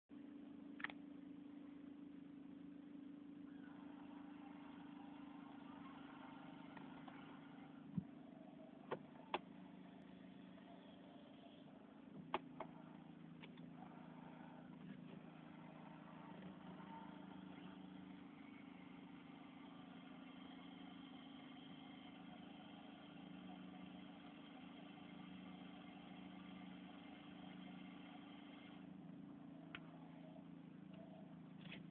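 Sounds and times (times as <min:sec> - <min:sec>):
low hum of running car: 0:00.1 - 0:31.9
sharp clicks: 0:00.8 - 0:01.0
power steering hissing: 0:03.5 - 0:29.0.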